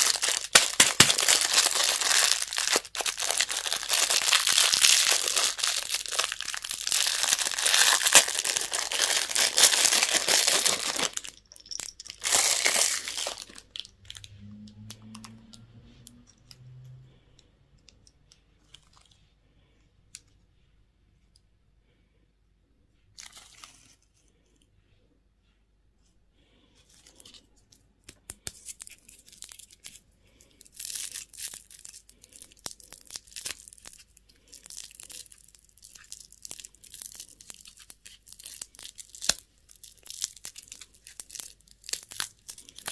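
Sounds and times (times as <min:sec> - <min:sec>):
wrapper crinkling and tearing: 0:00.0 - 0:14.3, 0:28.6 - 0:30.0, 0:30.6 - 0:42.9.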